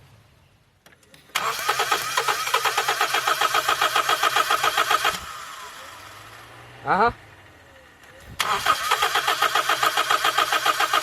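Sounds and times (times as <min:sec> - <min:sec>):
engine cranking by starter motor: 0:01.2 - 0:06.4, 0:08.0 - 0:11.0.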